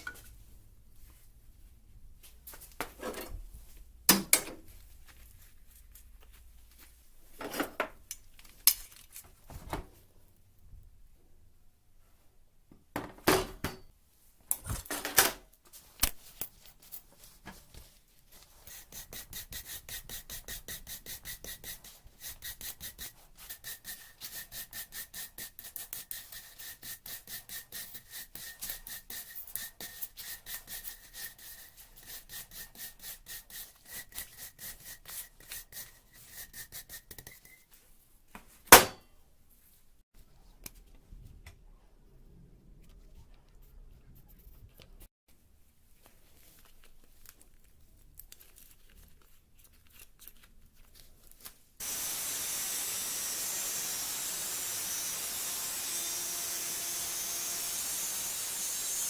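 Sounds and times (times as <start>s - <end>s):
hand tool scraping metal: 18.5s - 37.7s, 51.8s - 59.0s.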